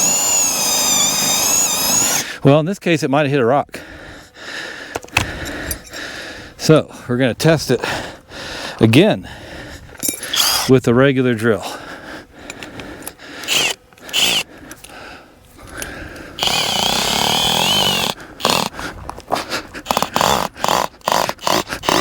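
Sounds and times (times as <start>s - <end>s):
electric drill whining: 0.0s - 2.3s, 10.2s - 10.7s, 12.4s - 15.0s, 15.7s - 18.8s, 19.8s - 22.0s.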